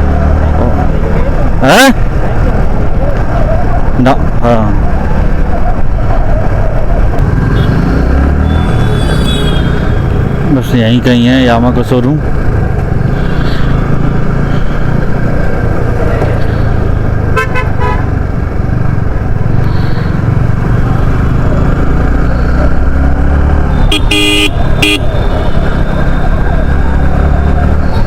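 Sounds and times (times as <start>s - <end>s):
motorcycle engine riding: 0.0s - 28.0s
vehicle horn honking: 8.5s - 9.9s, 17.4s - 18.1s, 23.8s - 25.4s.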